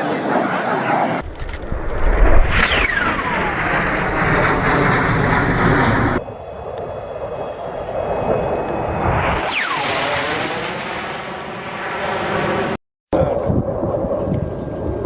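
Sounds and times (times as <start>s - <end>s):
high-pitched jet whine: 0.0s - 15.0s
jet engine rushing: 0.0s - 15.0s.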